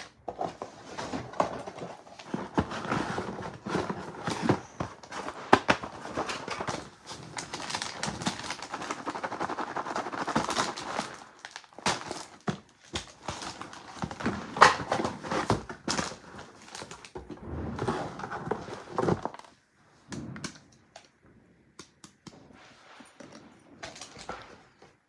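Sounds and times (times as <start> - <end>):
gift wrapping crinkling: 0.0 - 17.2.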